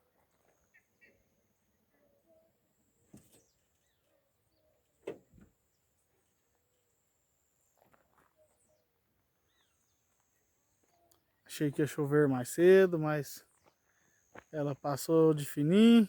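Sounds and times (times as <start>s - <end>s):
faint bird chirps: 0.4s - 11.5s, 13.4s - 14.6s.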